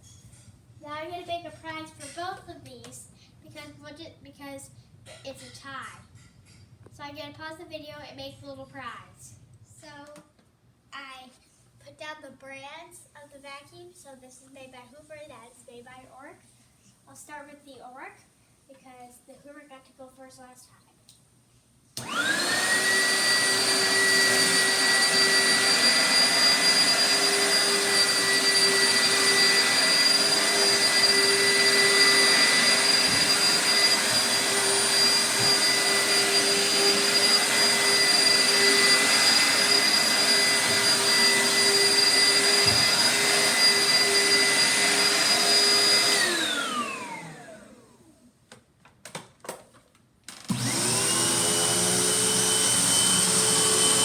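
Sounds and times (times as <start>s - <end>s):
vacuum cleaner motor whine: 22.0s - 48.2s, 50.3s - 54.0s.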